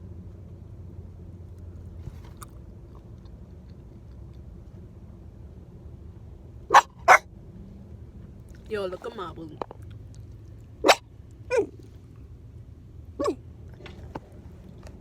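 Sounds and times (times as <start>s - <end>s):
low steady background noise: 0.0s - 15.0s
person chewing and eating: 2.1s - 4.6s.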